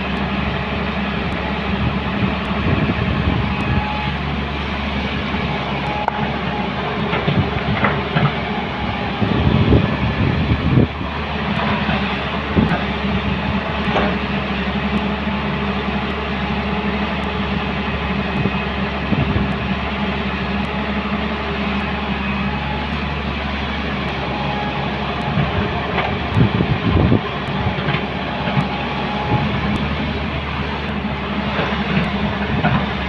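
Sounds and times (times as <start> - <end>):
diesel engines running: 0.0 - 33.0
metallic clanks and rumbles: 5.1 - 16.2, 22.4 - 33.0.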